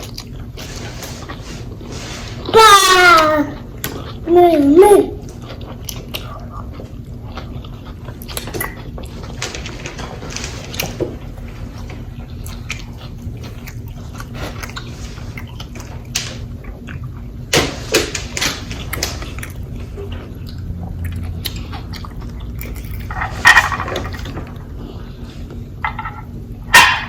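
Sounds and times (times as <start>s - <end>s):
chewing and biting food: 0.0s - 0.6s, 3.5s - 4.3s, 5.2s - 17.5s, 18.6s - 23.4s.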